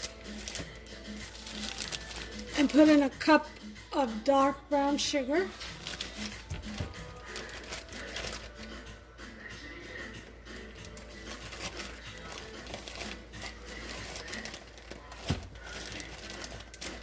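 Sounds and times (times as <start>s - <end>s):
sugar scooped from crinkling bag: 0.0s - 2.7s, 5.5s - 8.8s, 11.0s - 17.0s.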